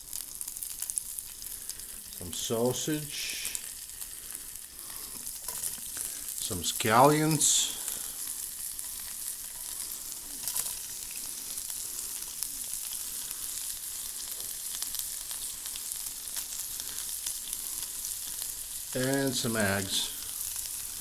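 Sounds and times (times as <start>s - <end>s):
small pops and crackles: 0.0s - 2.2s, 3.5s - 6.5s, 7.8s - 18.6s
food sizzling in a pan: 0.0s - 21.0s.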